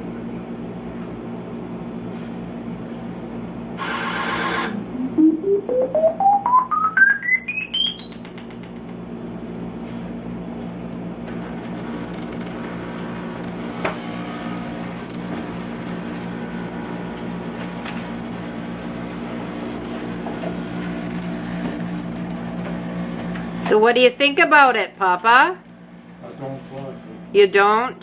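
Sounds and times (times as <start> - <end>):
electronic beeps rising in pitch: 4.6 - 9.1.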